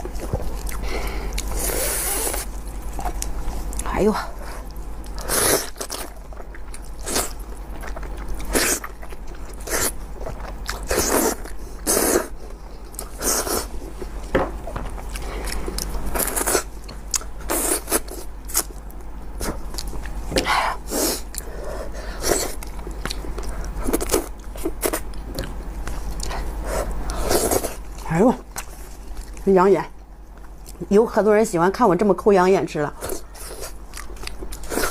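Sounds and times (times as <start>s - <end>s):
person chewing and biting meat: 0.0s - 3.8s, 4.6s - 20.2s, 33.3s - 34.9s.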